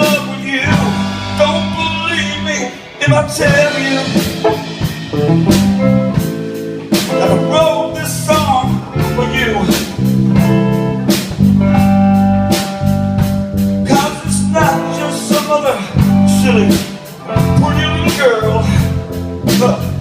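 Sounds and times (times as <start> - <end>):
bass notes: 0.0 - 20.0
guitar: 0.0 - 20.0
drum hits: 0.7 - 7.6.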